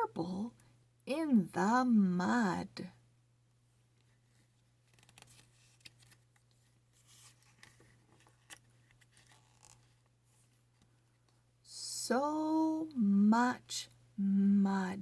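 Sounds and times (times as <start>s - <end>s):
faint steady hum: 0.0s - 15.0s
soft clicks and rustles: 3.9s - 11.5s.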